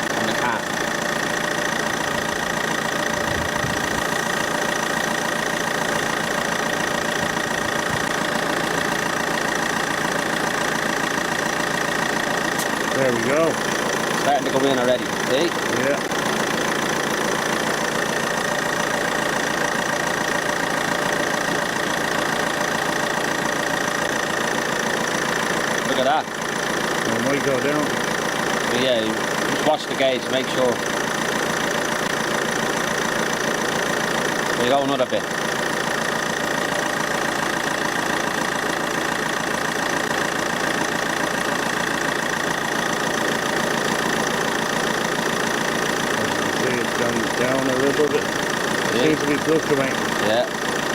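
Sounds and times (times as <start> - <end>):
air conditioning fan running: 0.0 - 29.5, 35.4 - 50.9
car engine idling: 0.0 - 50.9
air conditioning running: 43.1 - 50.7.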